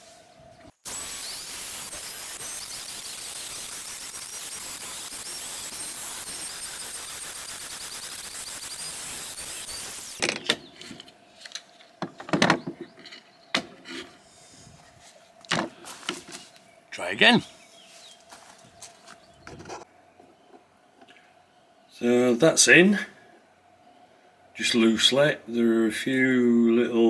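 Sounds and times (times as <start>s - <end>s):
power tool cutting tile: 0.8s - 10.2s.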